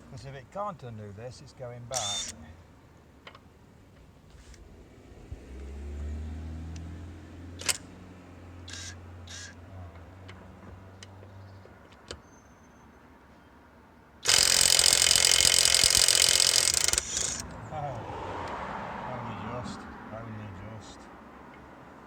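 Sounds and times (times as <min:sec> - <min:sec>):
short clicks: 0:01.9 - 0:02.4
impact wrench hammering: 0:14.2 - 0:17.4.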